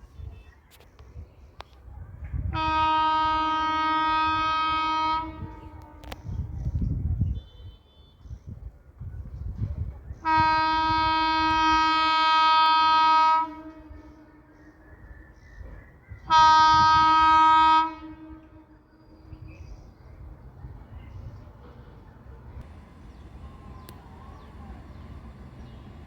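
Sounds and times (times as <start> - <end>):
low rumble of train: 0.0 - 26.0
train horn blasts: 2.5 - 6.3, 10.2 - 14.5, 16.3 - 19.4, 22.6 - 26.0.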